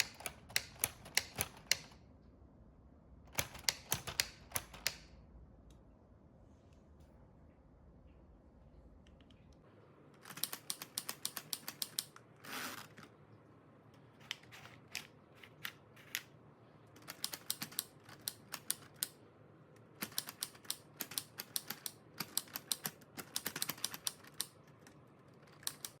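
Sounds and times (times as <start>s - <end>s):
typewriter model keys clacking: 0.0s - 2.0s, 3.3s - 5.0s, 10.2s - 12.1s, 17.0s - 19.1s, 20.0s - 24.6s, 25.4s - 26.0s.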